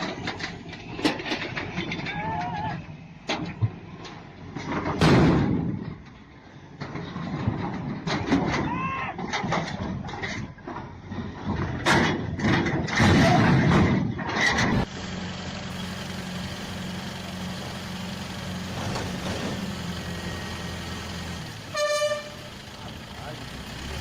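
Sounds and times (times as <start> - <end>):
loud rough noises: 11.8 - 24.0
diesel engine idling: 14.8 - 24.0.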